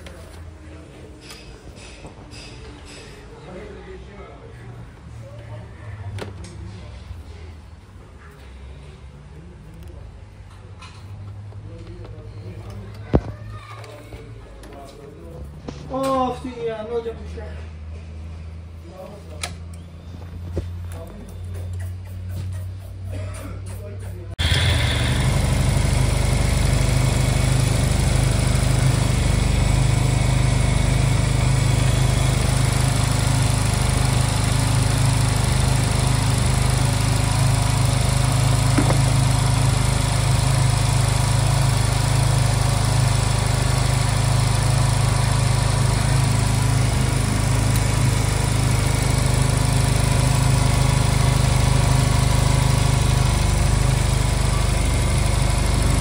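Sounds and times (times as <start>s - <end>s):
scooter engine idling: 24.4s - 56.0s.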